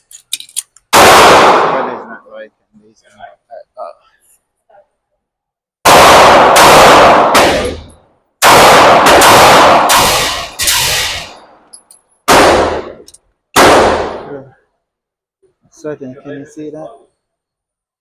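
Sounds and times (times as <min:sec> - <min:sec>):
handgun shots echoing indoors: 0:05.8 - 0:11.5.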